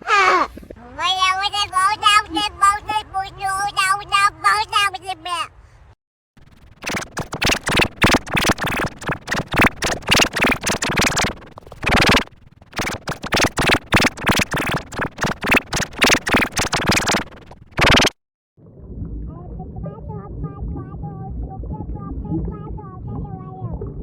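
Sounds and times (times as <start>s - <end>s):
distorted stuttering voice effect: 6.4s - 18.2s.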